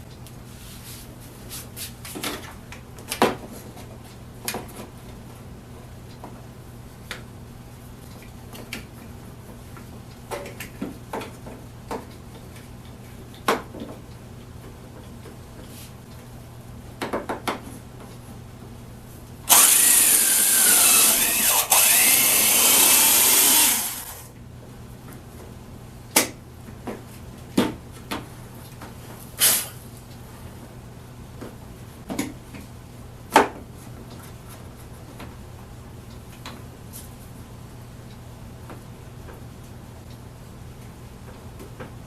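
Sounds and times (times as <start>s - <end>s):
electric drill running: 19.5s - 24.3s.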